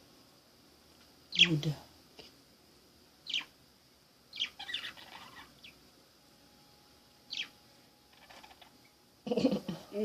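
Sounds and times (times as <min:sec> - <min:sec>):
small birds chirping: 0:01.3 - 0:02.3, 0:03.2 - 0:06.0, 0:07.1 - 0:09.7.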